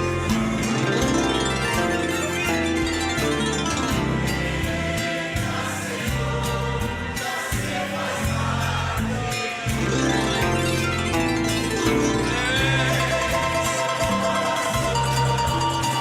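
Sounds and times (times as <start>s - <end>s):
harp playing: 0.0s - 5.3s, 9.8s - 16.0s
voices singing: 0.0s - 16.0s.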